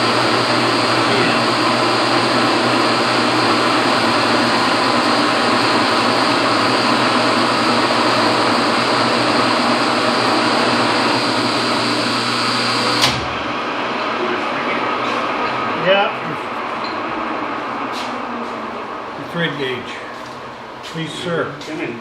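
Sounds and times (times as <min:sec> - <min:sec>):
metal lathe running: 0:00.0 - 0:13.2.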